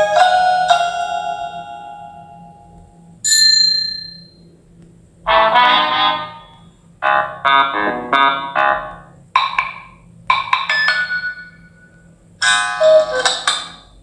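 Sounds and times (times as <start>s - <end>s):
bell-like ding: 0.7s - 4.3s
brassy chord: 5.3s - 9.1s.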